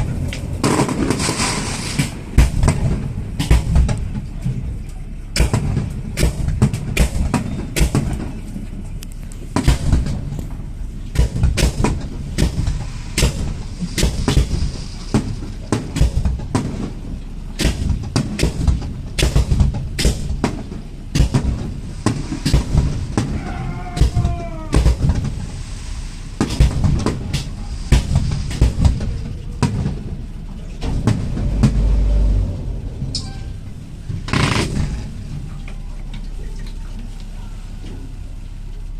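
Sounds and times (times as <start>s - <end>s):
fireworks bangs and cracks: 0.6s - 4.2s, 24.1s - 25.5s, 26.4s - 30.2s.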